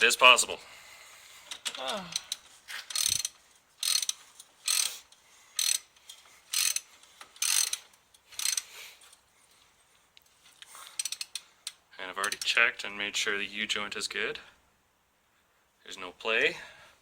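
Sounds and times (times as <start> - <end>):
socket ratchet clicking: 2.1 - 5.0, 5.6 - 5.9, 6.5 - 7.8, 11.0 - 11.8.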